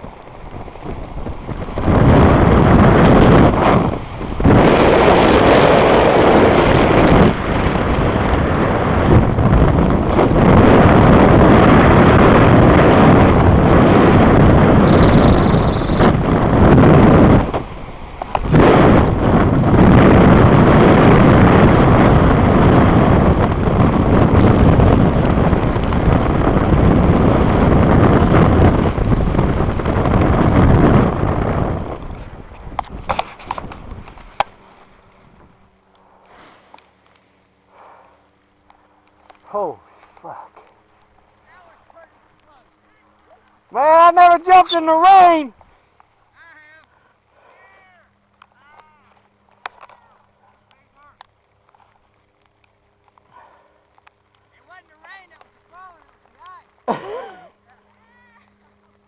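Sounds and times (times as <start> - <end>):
wind rushing over microphone: 0.0 - 36.7
short high beep: 14.9 - 16.1.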